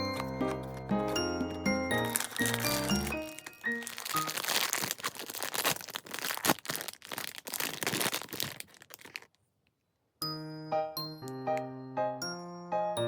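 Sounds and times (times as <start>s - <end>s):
plastic packaging crinkling: 0.0s - 9.4s.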